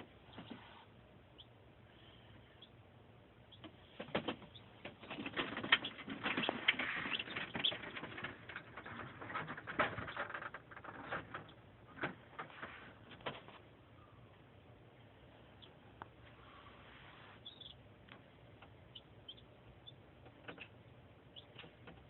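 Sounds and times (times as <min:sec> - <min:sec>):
chicks peeping: 0:00.0 - 0:22.0
taps and scratches: 0:03.6 - 0:13.6.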